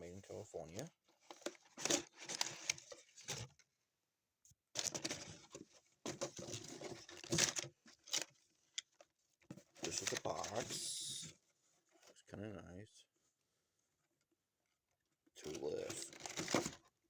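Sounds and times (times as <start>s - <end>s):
packaging rustling and scraping: 1.1s - 3.6s, 4.8s - 11.2s, 15.4s - 16.9s.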